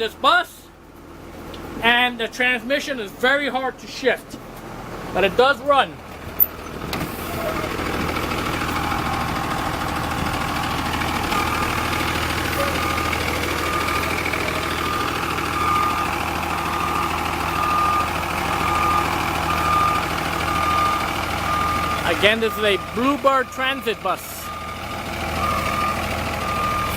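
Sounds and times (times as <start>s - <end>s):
bus engine running: 0.0s - 2.5s, 3.1s - 26.9s
reversing alarm beeping: 8.4s - 26.9s.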